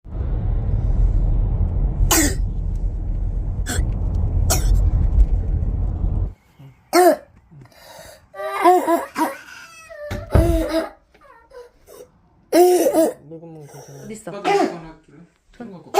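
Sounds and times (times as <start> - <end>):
steady low rumble: 0.0 - 6.4
child barking cough: 7.0 - 7.3, 8.6 - 9.4, 10.5 - 11.0, 12.5 - 13.2, 14.4 - 15.0.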